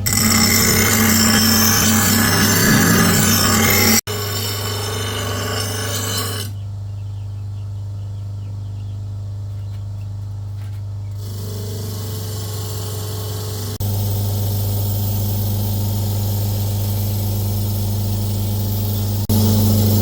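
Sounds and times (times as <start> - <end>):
power tool humming: 0.0 - 6.5, 17.1 - 20.0
abrasive grinding on rusted metal: 0.0 - 6.6.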